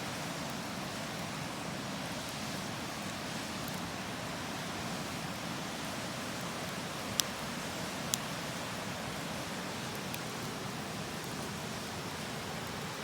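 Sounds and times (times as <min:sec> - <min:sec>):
campfire crackles: 0:00.0 - 0:13.0.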